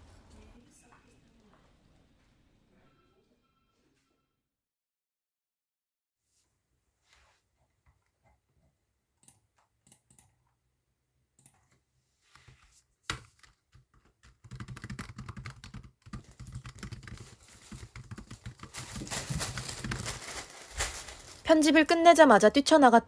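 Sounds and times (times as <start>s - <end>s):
computer keyboard typing: 13.1s - 18.9s.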